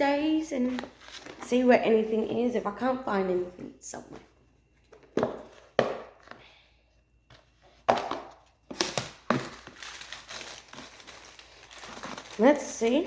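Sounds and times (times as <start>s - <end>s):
plastic packaging crinkling: 8.8s - 13.0s.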